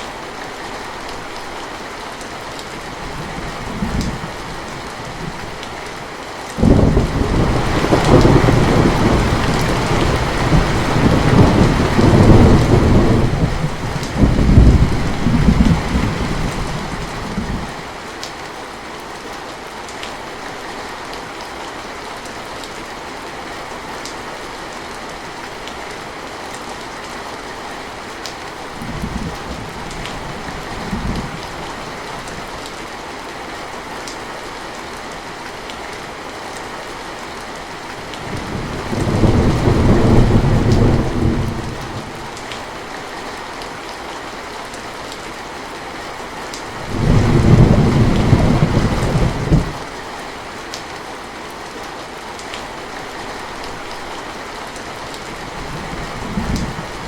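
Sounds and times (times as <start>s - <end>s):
steady rain falling: 0.0s - 57.0s
rolling thunder: 6.6s - 17.7s, 38.2s - 42.2s, 46.8s - 49.9s.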